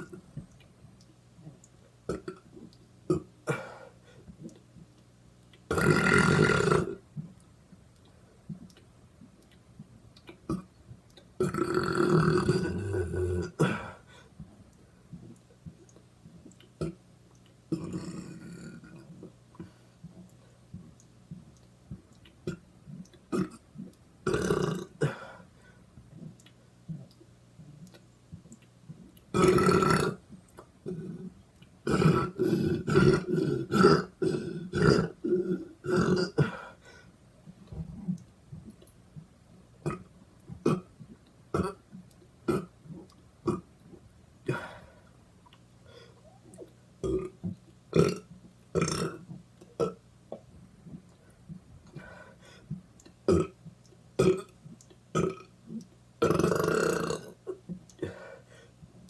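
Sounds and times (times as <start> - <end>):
person burping: 2.1 - 2.4, 3.1 - 3.8, 5.7 - 7.0, 11.4 - 14.0, 17.7 - 19.0, 23.3 - 23.6, 24.2 - 25.4, 29.3 - 30.2, 31.9 - 36.7, 39.8 - 40.9, 41.5 - 41.8, 42.5 - 42.7, 47.0 - 50.0, 53.3 - 53.6, 54.2 - 54.5, 55.2 - 55.5, 56.2 - 58.4.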